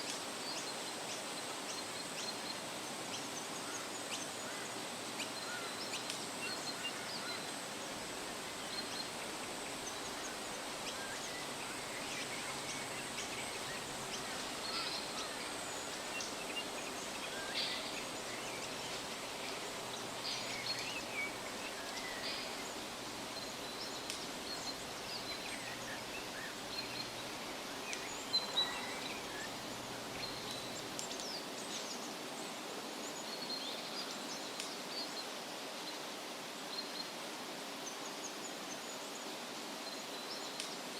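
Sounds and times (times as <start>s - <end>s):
steady background hiss: 0.0s - 40.9s
birds chirping: 0.6s - 32.1s.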